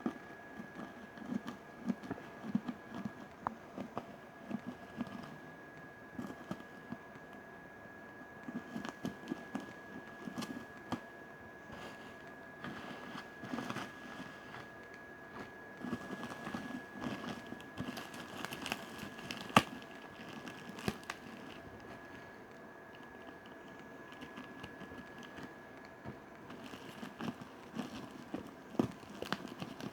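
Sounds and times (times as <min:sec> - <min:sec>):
packaging crinkling and rustling: 0:11.8 - 0:29.9.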